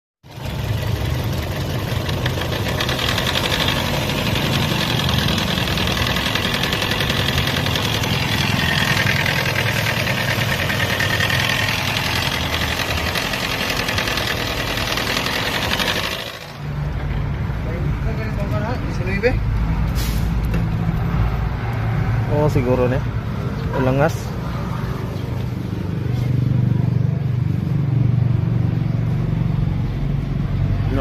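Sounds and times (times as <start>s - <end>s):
car engine running with knocking: 0.3s - 17.5s.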